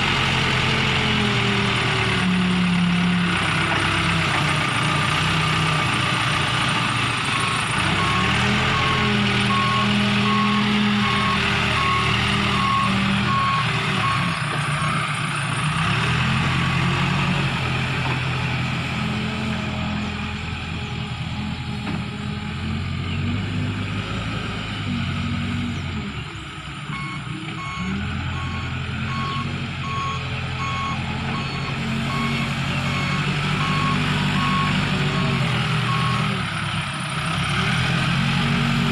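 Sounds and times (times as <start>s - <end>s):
diesel engine revving: 0.0s - 38.9s
reversing alarm beeping: 7.3s - 15.0s, 26.9s - 36.3s.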